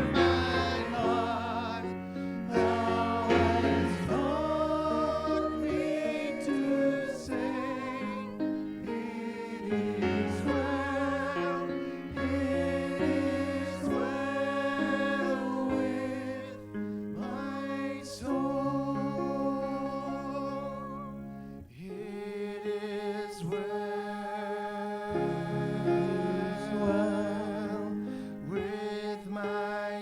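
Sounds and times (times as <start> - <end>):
chordal accompaniment: 0.0 - 22.3
voices singing worship music: 0.0 - 30.0.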